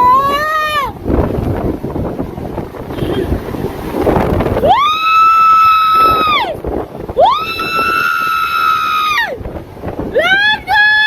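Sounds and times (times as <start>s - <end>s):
storm wind: 0.0s - 11.0s
person crying out shrilly: 7.2s - 9.4s.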